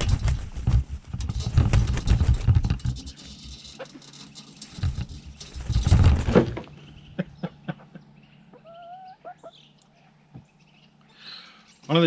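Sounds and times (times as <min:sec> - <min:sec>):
hen wings flapping: 0:00.0 - 0:06.8
hen calling: 0:06.7 - 0:11.8.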